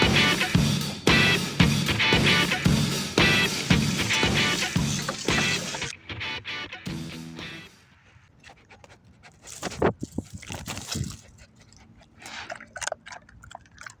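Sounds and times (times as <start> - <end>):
dog panting: 3.2 - 5.9, 7.8 - 14.0.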